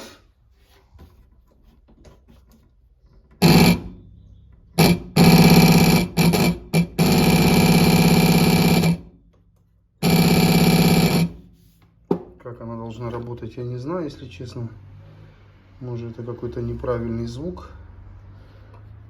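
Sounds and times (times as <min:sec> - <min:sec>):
electric siren buzzing: 0:03.4 - 0:09.1, 0:10.0 - 0:11.4.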